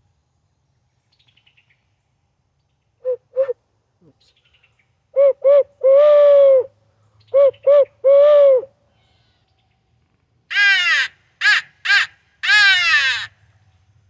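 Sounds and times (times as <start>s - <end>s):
recorded owl hoots: 3.0s - 3.6s, 5.1s - 9.3s
loud crow caws: 10.5s - 13.6s.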